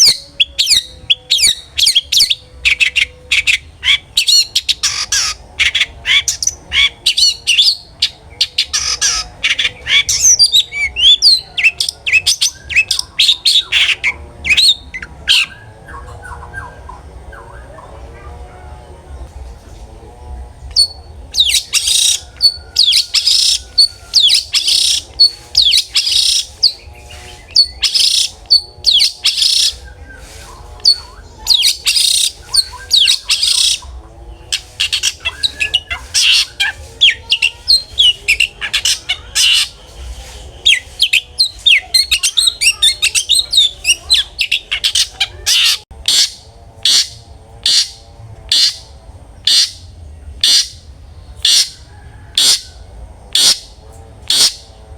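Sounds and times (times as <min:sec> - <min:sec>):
shrike singing: 0:00.0 - 0:19.3, 0:20.0 - 0:54.9.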